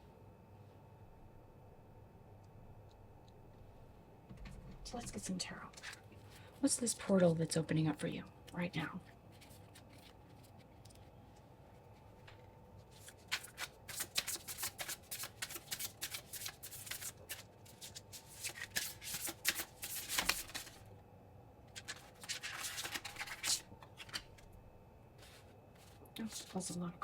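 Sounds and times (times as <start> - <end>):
cards being shuffled: 9.2 - 11.2, 11.8 - 20.9, 21.7 - 24.5, 25.2 - 26.8.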